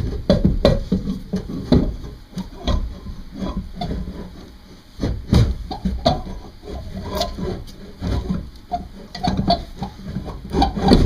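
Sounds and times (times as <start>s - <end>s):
metal scraping: 2.5s - 11.0s.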